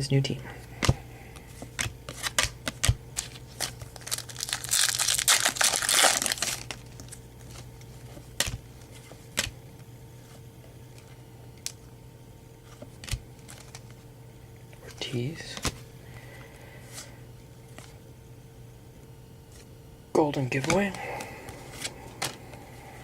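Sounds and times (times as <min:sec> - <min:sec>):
sharp clicks of card handling: 0:00.8 - 0:04.0, 0:06.7 - 0:09.6, 0:12.7 - 0:14.0
foil wrapper tearing and crinkling: 0:02.2 - 0:07.7.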